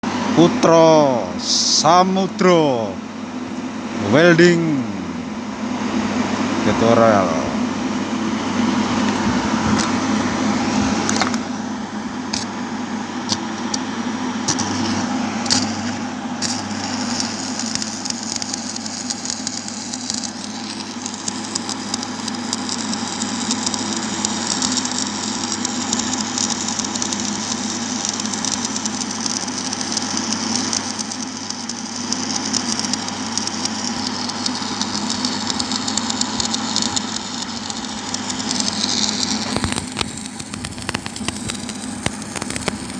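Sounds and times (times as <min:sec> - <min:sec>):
steady electrical hum: 0:00.0 - 0:42.9
welding arc crackling: 0:08.8 - 0:42.9.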